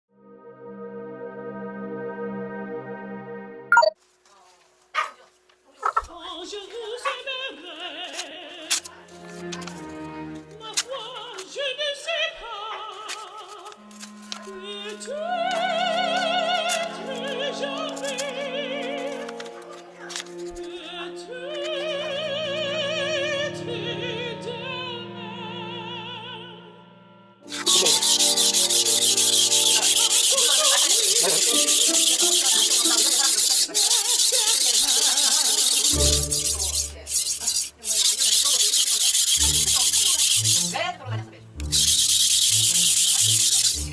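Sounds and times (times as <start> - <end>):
faint music: 4.0 - 26.5, 35.6 - 43.9
operatic singing with classical accompaniment: 6.1 - 26.8, 27.5 - 36.8
knife scraping on whetstone: 27.5 - 40.8, 41.6 - 43.9.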